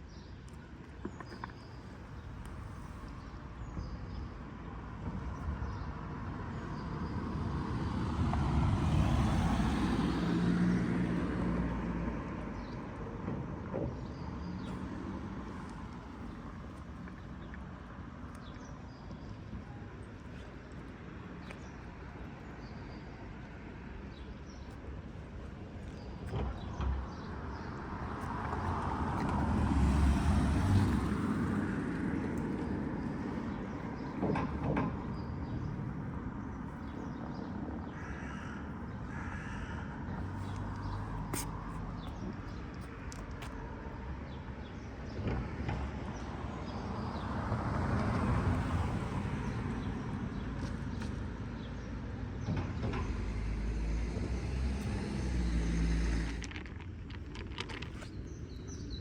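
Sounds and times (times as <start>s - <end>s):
street ambience: 0.0s - 59.0s
vehicle passing: 8.1s - 12.3s, 27.9s - 36.4s, 52.9s - 57.9s.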